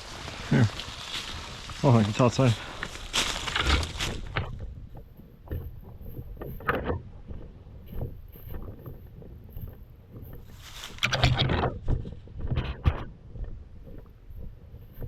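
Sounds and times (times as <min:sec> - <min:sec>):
rustling of leaves: 0:00.0 - 0:05.0, 0:10.3 - 0:12.2
footfalls in woods: 0:00.0 - 0:06.6, 0:07.2 - 0:12.5
wind: 0:00.0 - 0:15.0
microphone handling noise: 0:02.8 - 0:15.0.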